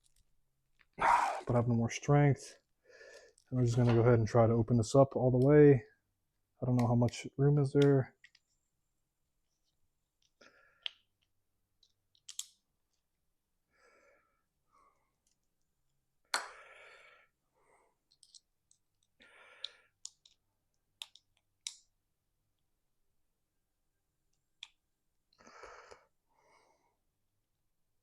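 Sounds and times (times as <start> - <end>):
breathy sounds of effort: 1.0 - 1.5.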